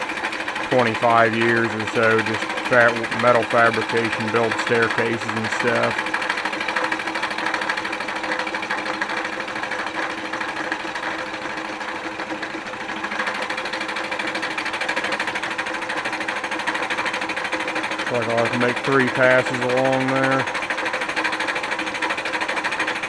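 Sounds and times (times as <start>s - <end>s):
milling cutter chattering on iron: 0.0s - 23.0s
motor hum: 0.0s - 23.0s.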